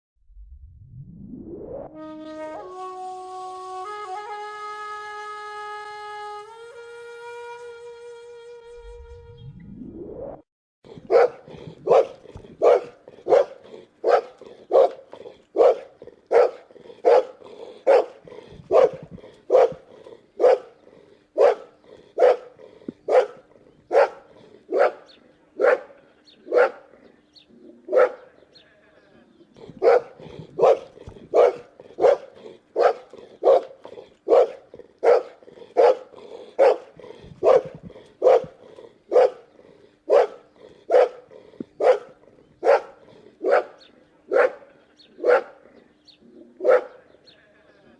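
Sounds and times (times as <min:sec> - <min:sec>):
dog barking: 0:10.9 - 0:20.8, 0:21.4 - 0:27.0, 0:27.6 - 0:28.4, 0:29.6 - 0:39.5, 0:40.1 - 0:45.7, 0:46.3 - 0:47.1.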